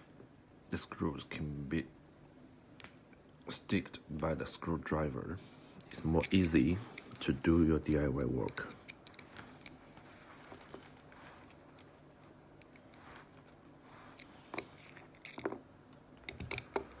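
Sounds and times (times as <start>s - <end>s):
screwdriver and screws handling: 5.8s - 7.3s, 7.9s - 9.9s, 10.6s - 15.6s, 16.2s - 16.8s.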